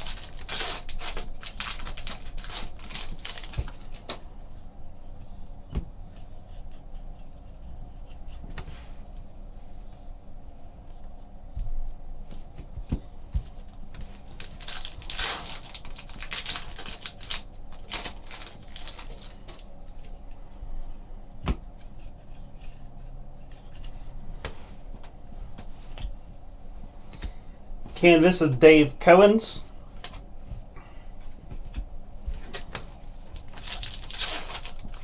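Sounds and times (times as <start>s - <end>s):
cards rustling and scraping: 32.4s - 35.0s.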